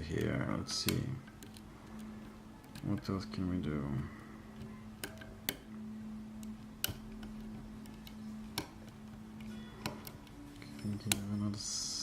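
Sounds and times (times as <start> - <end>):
faint low hum: 0.0 - 12.0
lock pick clicking in a lock: 5.0 - 5.6.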